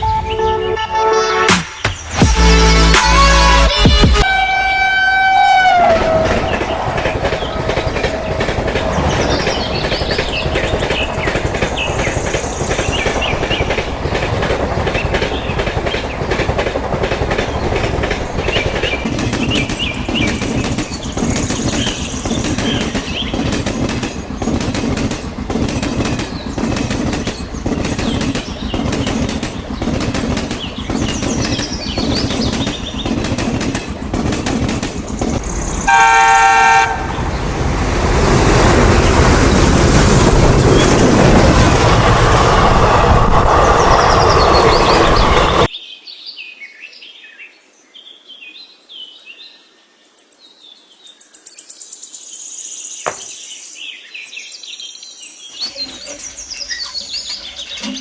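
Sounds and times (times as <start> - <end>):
horn-like tone dropping in pitch: 4.2 - 6.4.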